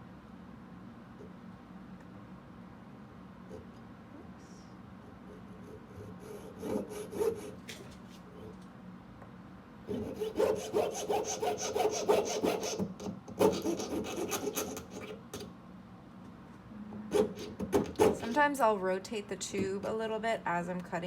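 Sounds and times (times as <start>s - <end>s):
saw cutting metal tubing: 5.9s - 7.6s, 9.9s - 15.2s.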